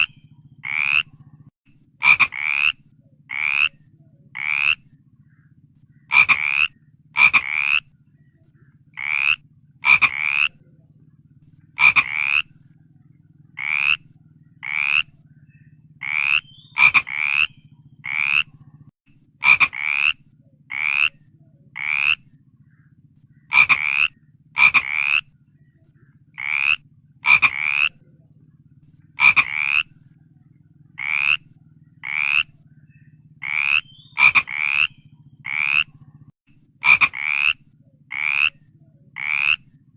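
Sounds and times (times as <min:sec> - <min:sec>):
frogs croaking: 0:00.0 - 0:39.9
low steady hum: 0:00.0 - 0:39.9.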